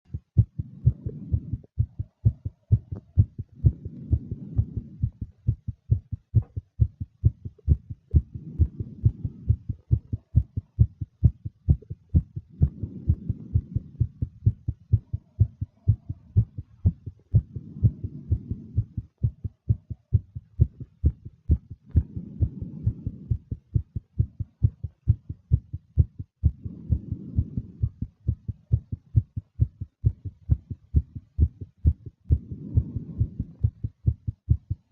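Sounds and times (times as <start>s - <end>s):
fast heartbeat thumps: 0.0s - 34.9s
woman breathing slowly: 2.8s - 6.1s, 7.7s - 11.0s, 11.7s - 19.4s, 20.6s - 24.1s, 26.4s - 28.9s, 31.4s - 34.3s.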